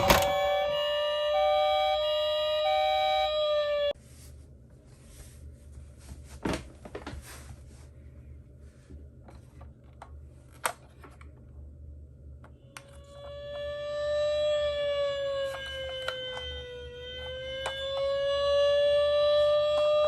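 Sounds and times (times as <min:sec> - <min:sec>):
soft rustles of toys handled: 0:04.0 - 0:11.6.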